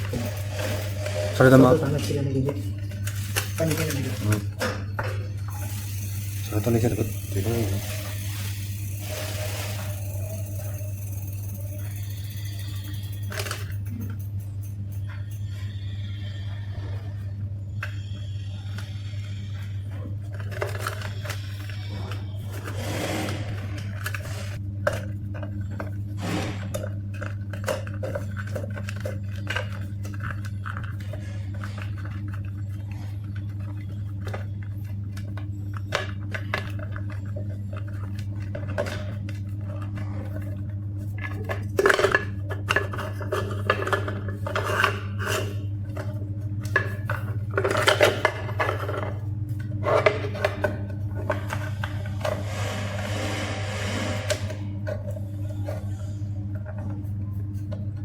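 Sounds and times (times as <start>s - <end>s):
metal parts and tools clinking: 0.0s - 15.9s.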